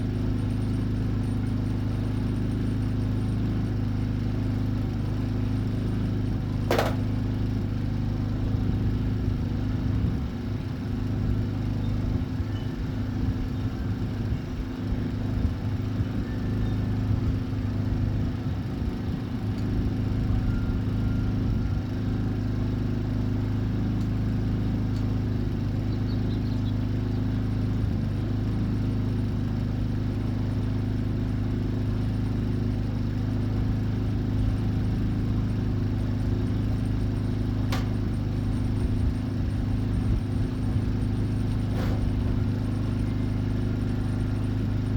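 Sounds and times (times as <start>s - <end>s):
low machine hum: 0.0s - 44.9s
sharp click: 6.7s - 7.1s, 37.7s - 38.1s, 41.5s - 42.4s.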